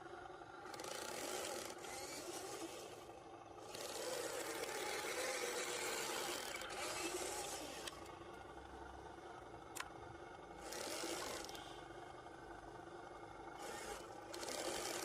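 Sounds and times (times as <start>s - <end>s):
small electric motor whirring: 0.6s - 8.3s, 10.6s - 11.8s, 13.6s - 15.0s.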